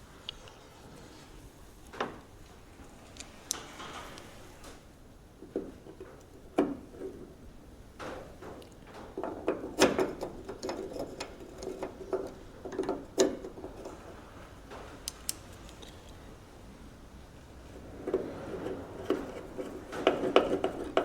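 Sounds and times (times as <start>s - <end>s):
tools knocking on metal car parts: 9.1s - 13.8s, 19.1s - 21.0s.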